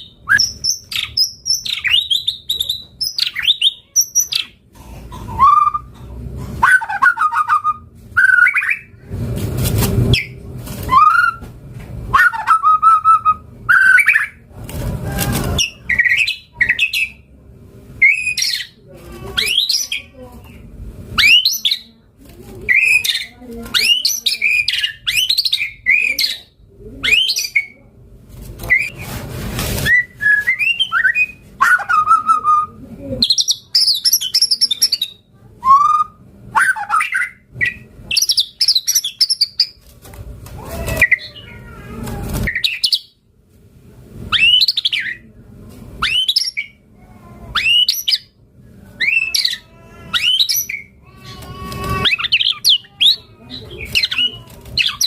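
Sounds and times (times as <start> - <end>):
bird singing whistled phrases: 29.9 - 37.4, 47.6 - 48.3, 50.2 - 50.9.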